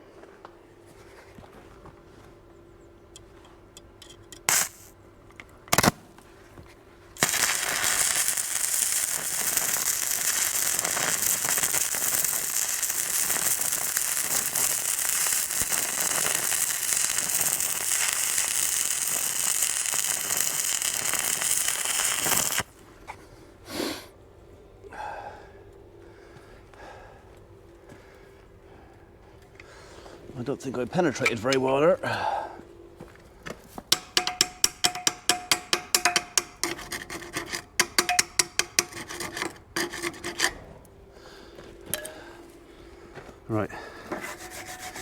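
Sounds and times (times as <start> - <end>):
welding arc crackling sizzle: 4.4 - 5.0, 7.2 - 22.8.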